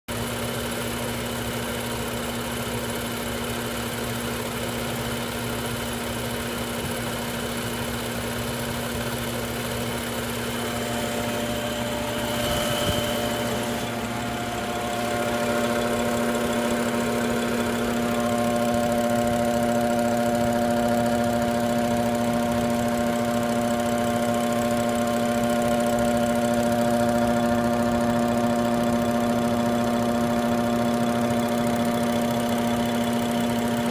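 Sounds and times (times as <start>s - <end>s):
car engine hum: 7.0s - 30.7s.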